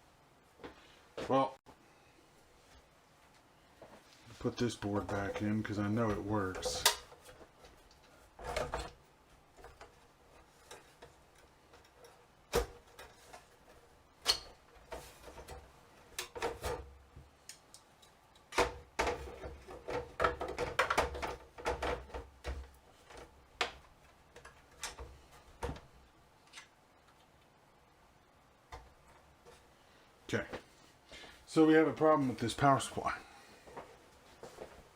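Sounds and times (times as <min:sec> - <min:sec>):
parts rattling and scraping: 0:04.2 - 0:16.9.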